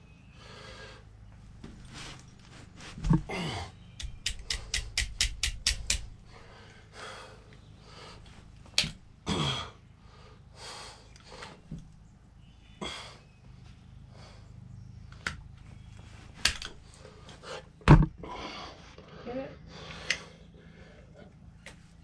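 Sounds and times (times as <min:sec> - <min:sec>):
knocks and rustles of parts: 0:01.6 - 0:03.3, 0:17.8 - 0:18.2
hand tool clicking: 0:04.0 - 0:06.1.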